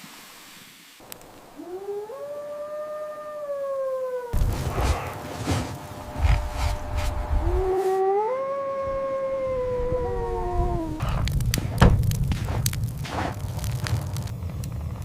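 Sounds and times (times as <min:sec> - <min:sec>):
dog howling: 0:01.6 - 0:05.2, 0:07.4 - 0:11.2
low rumble: 0:08.9 - 0:15.0.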